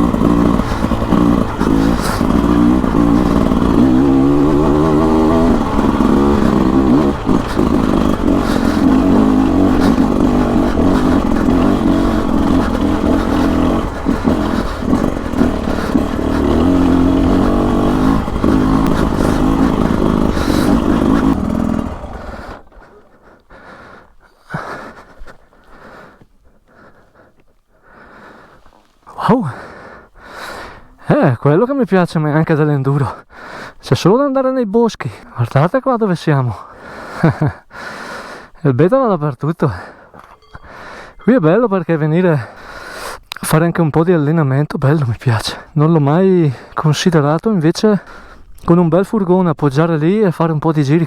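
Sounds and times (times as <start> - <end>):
two-stroke engine revving: 0.0 - 22.9.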